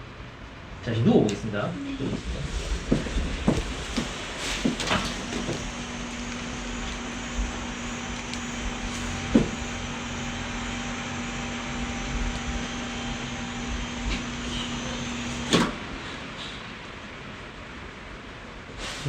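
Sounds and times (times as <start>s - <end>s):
machine hum: 1.7s - 16.0s.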